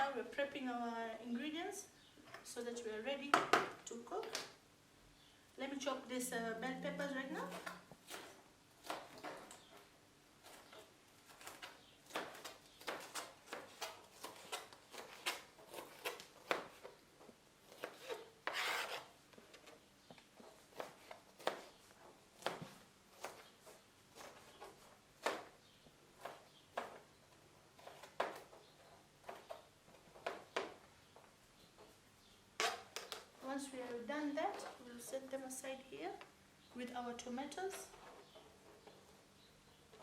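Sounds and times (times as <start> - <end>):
knife scraping across board: 17.6 - 19.2.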